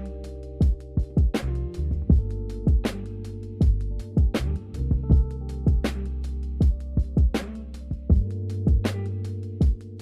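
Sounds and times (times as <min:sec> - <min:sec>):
drum hits: 0:00.6 - 0:01.5, 0:02.1 - 0:03.0, 0:03.6 - 0:06.0.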